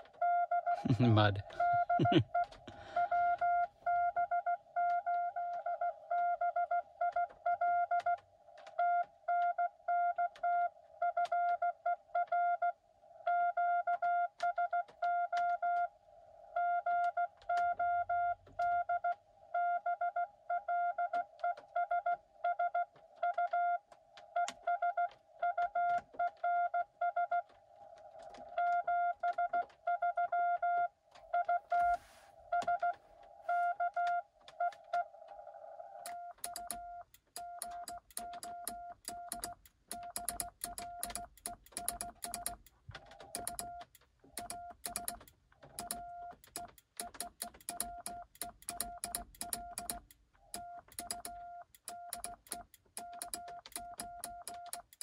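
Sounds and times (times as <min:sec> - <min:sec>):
morse code tone: 0:00.3 - 0:06.6
sharp clicks: 0:36.0 - 0:55.0.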